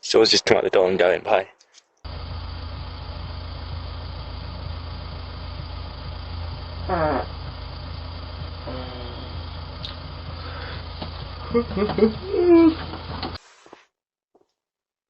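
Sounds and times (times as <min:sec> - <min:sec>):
low hum and hiss: 0:02.1 - 0:13.4
brief low tone: 0:04.6 - 0:10.4
fart rising in pitch: 0:06.8 - 0:07.5, 0:08.6 - 0:10.0.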